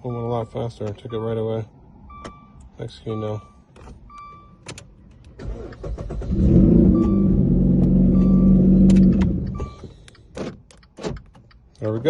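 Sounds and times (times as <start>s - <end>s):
car engine cranking and running: 3.7s - 12.0s.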